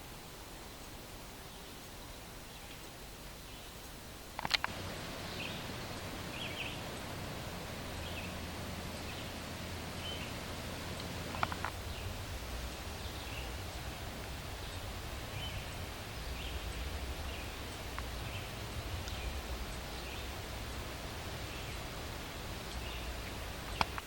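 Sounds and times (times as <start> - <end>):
low rumble: 4.7 - 23.8.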